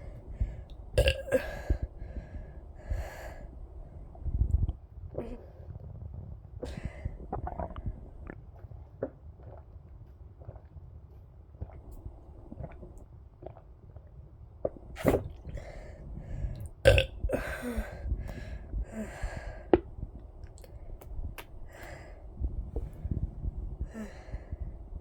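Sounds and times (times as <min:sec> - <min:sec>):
person burping: 0:01.0 - 0:01.7, 0:16.9 - 0:17.6.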